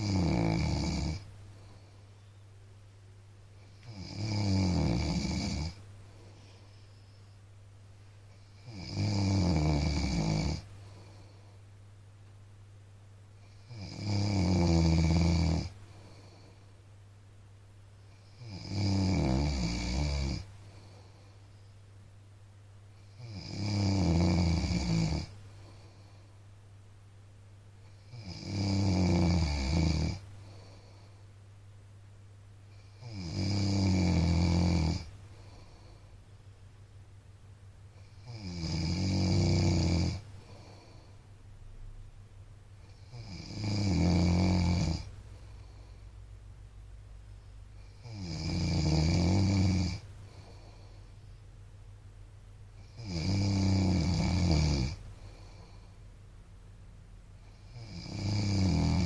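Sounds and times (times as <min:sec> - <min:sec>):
man snoring: 0:00.0 - 0:01.3, 0:03.7 - 0:05.9, 0:08.6 - 0:10.7, 0:13.4 - 0:15.8, 0:18.3 - 0:20.5, 0:23.1 - 0:25.4, 0:28.0 - 0:30.7, 0:32.7 - 0:35.8, 0:38.0 - 0:41.0, 0:42.9 - 0:45.2, 0:47.8 - 0:50.9, 0:52.8 - 0:55.8, 0:57.4 - 0:59.0
faint low hum: 0:00.0 - 0:59.0
soft breathing: 0:01.1 - 0:02.5, 0:05.7 - 0:08.8, 0:10.6 - 0:11.8, 0:15.7 - 0:17.0, 0:20.4 - 0:22.2, 0:25.2 - 0:26.6, 0:30.2 - 0:31.6, 0:35.0 - 0:36.4, 0:39.5 - 0:41.4, 0:45.0 - 0:46.4, 0:49.9 - 0:51.7, 0:54.9 - 0:56.3.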